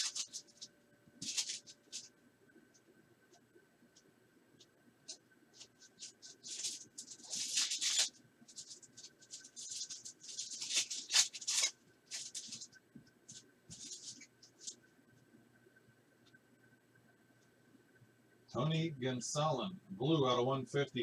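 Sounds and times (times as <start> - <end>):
cards scraping and rustling: 0.0 - 2.1, 5.1 - 14.8.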